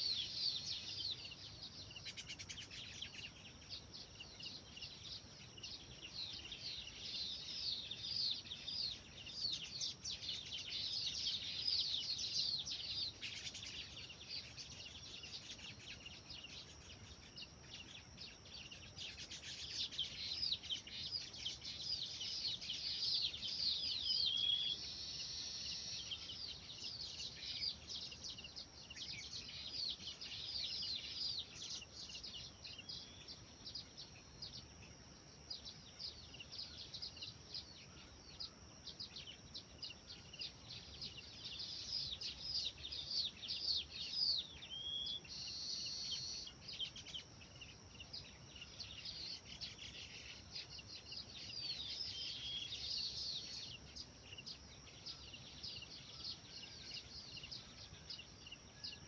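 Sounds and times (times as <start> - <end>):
small birds chirping: 0.0 - 59.0.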